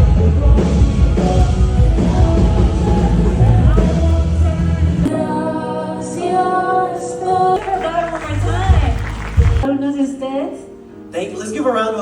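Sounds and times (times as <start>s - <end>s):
person singing: 0.0s - 9.7s
worship band music: 0.0s - 9.8s.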